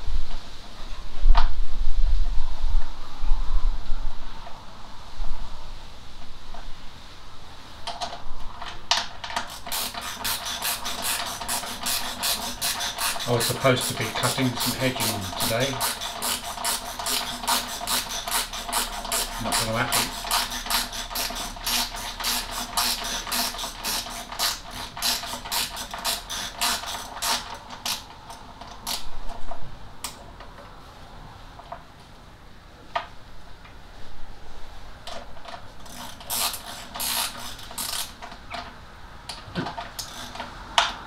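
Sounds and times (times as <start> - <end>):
ratchet spanner clicking: 9.0 - 29.1, 35.8 - 38.5, 39.9 - 41.0.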